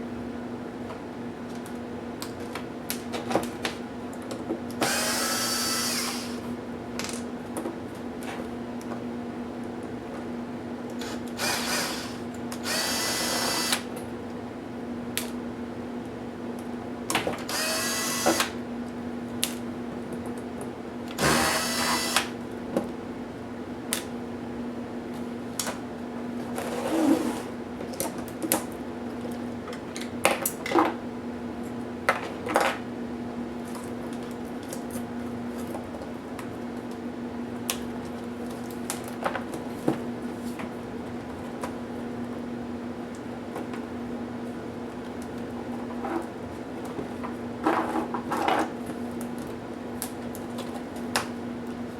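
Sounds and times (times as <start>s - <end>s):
electric screwdriver whirring: 4.8s - 6.4s, 11.0s - 13.9s, 17.5s - 18.6s, 21.2s - 22.4s.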